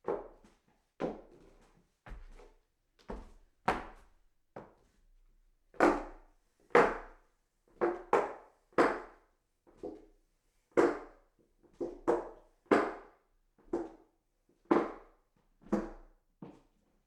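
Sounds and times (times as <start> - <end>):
footsteps on hollow wooden stairs: 2.1 - 2.4, 3.0 - 4.1.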